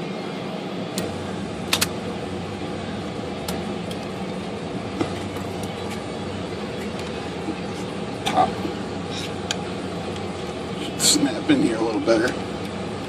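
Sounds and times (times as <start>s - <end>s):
steady mechanical hum: 0.0s - 13.0s.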